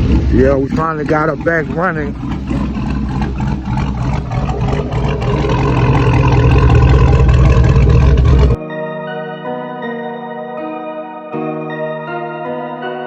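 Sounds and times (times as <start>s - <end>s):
car engine running: 0.0s - 8.6s.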